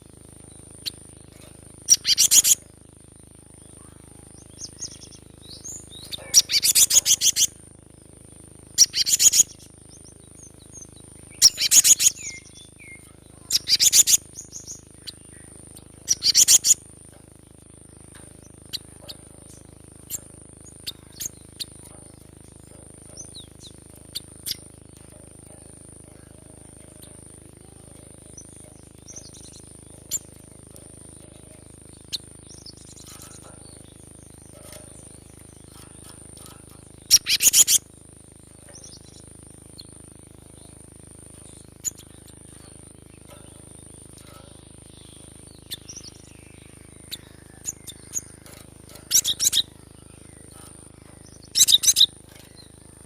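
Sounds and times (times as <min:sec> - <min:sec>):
bird chirping sharply: 0:35.7 - 0:37.8, 0:48.9 - 0:52.7.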